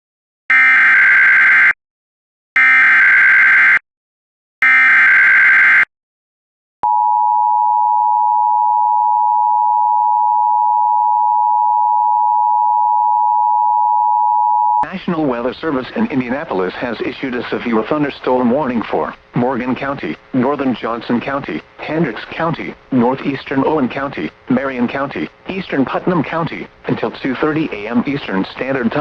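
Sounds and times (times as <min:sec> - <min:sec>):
steady single-pitch alarm tone: 0:00.5 - 0:01.8, 0:02.6 - 0:03.8, 0:04.6 - 0:05.9, 0:06.8 - 0:14.8.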